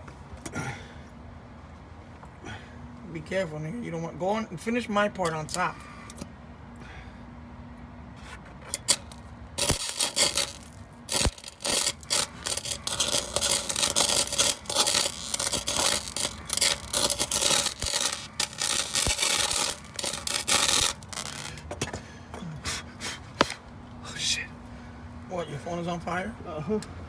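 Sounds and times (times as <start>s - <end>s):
welding arc crackling: 8.7s - 21.7s.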